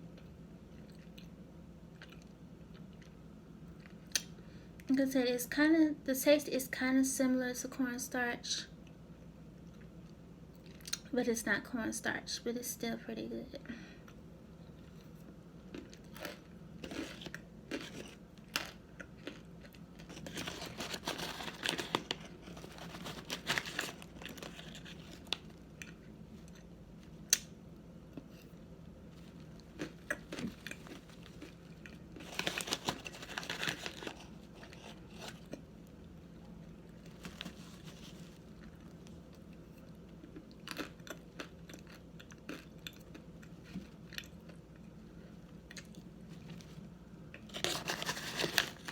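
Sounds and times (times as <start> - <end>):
crunching starch while chewing: 14.1 - 45.0.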